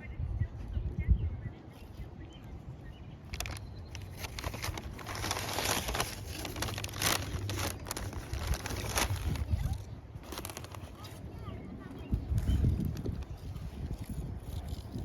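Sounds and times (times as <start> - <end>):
wind rumble on microphone: 0.0 - 15.0
plastic or paper crinkling: 3.3 - 11.2, 12.3 - 15.0.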